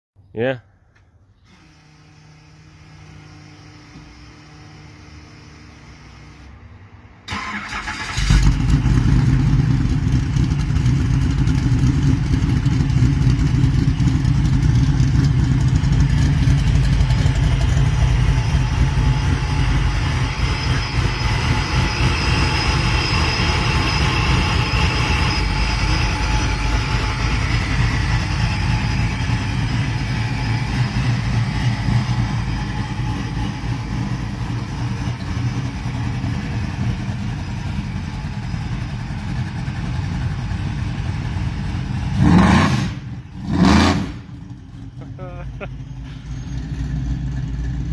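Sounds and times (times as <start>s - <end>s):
starter motor cranking: 7.3s - 9.0s
car engine running: 7.3s - 47.9s.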